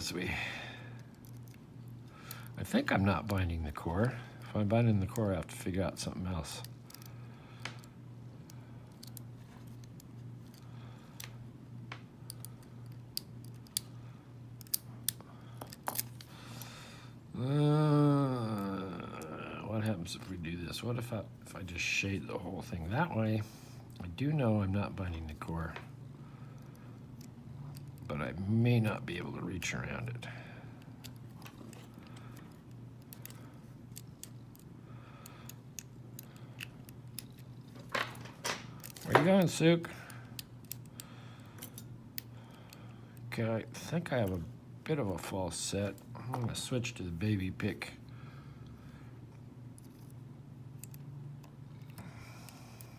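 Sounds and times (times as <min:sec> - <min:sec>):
faint low hum: 0:00.0 - 0:52.9
lock pick clicking: 0:40.3 - 0:42.8
lock pick clicks and scrapes: 0:41.6 - 0:42.3.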